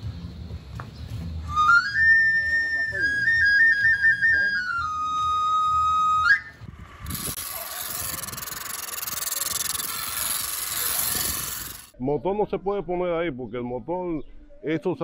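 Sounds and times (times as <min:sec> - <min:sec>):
pan-pipe whistle: 0:01.5 - 0:06.6
blade grinding on stone wheel: 0:06.8 - 0:11.9.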